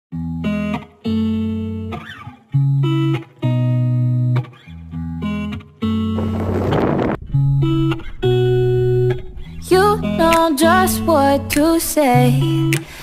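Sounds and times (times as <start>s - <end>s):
pop music guitar chords: 0.1s - 13.0s.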